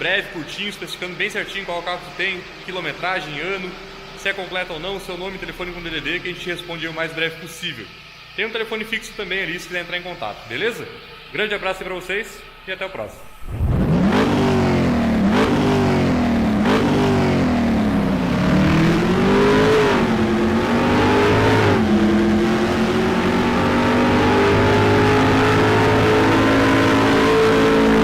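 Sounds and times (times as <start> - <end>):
car engine revving: 13.2 - 28.0.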